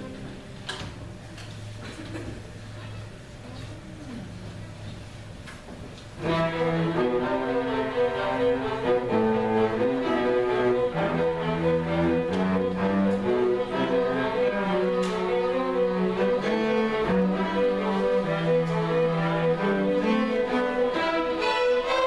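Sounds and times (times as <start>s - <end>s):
string orchestra playing long bowed notes: 6.2s - 22.0s.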